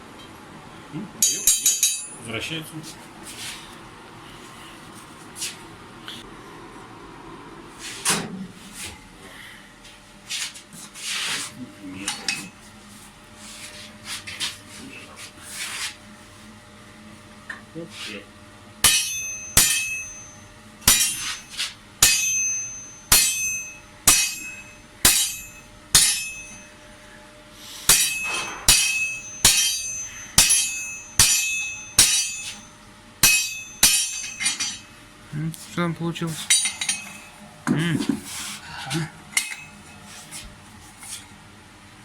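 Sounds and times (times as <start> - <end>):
hammer striking metal on anvil: 1.2 - 2.2, 18.8 - 26.7, 27.9 - 34.9, 36.5 - 37.3, 39.4 - 39.8.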